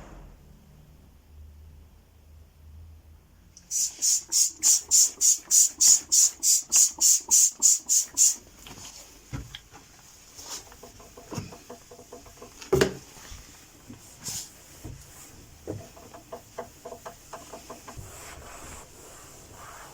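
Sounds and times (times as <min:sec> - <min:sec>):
spray bottle spritzing: 0:03.6 - 0:08.4
rubbing: 0:10.3 - 0:19.9.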